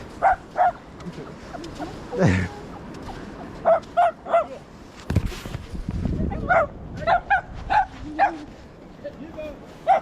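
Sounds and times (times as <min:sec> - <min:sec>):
dog barking: 0:00.2 - 0:00.8, 0:03.6 - 0:04.6, 0:06.4 - 0:08.5.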